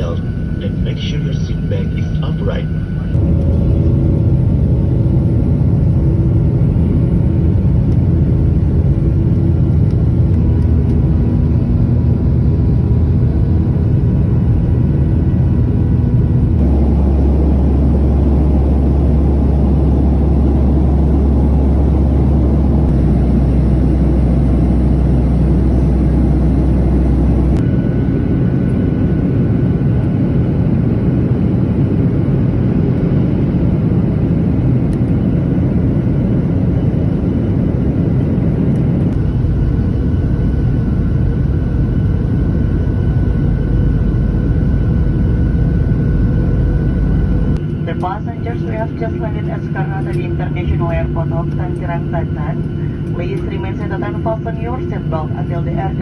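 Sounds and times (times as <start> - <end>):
deep hum: 0.0 - 29.4
jet engine cabin rumble: 0.0 - 56.0.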